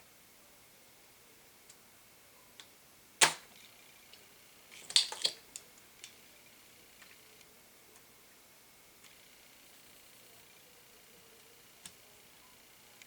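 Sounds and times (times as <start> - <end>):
desoldering pump snap: 3.2 - 3.5.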